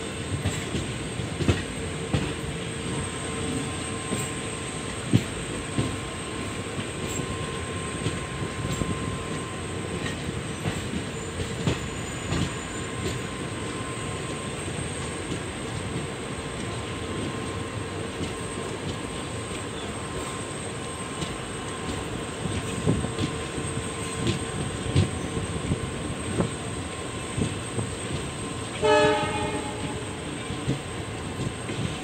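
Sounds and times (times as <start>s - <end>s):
train wheels rumbling on rails: 0.0s - 32.0s
train horn: 28.7s - 30.6s.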